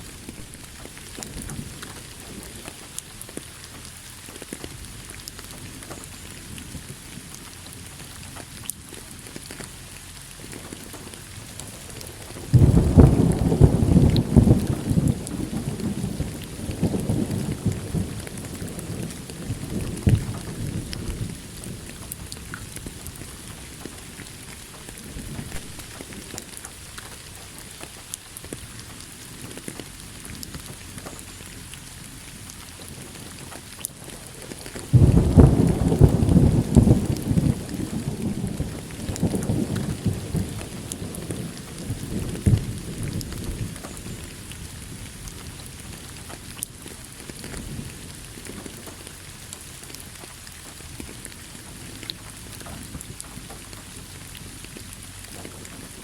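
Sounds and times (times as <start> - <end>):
thunder rumbling: 0.0 - 3.3, 10.4 - 27.3, 32.9 - 50.3
steady rain: 0.0 - 56.0.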